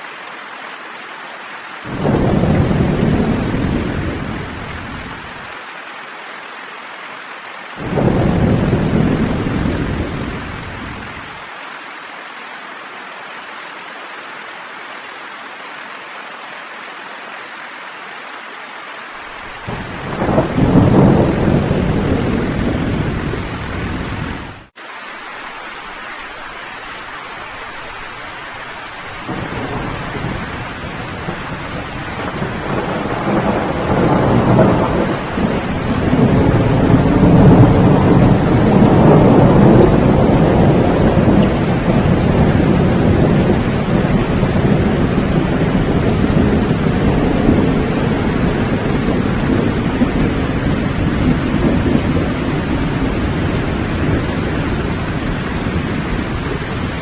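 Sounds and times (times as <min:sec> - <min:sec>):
steady rain: 0:00.0 - 0:57.0
rolling thunder: 0:01.9 - 0:05.4, 0:07.8 - 0:11.4, 0:19.6 - 0:24.7, 0:29.2 - 0:57.0.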